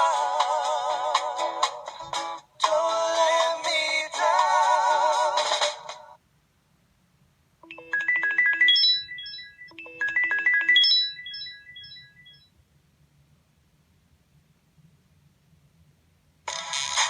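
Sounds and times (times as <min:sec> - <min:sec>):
synthesized ringtone melody: 0:07.6 - 0:12.5.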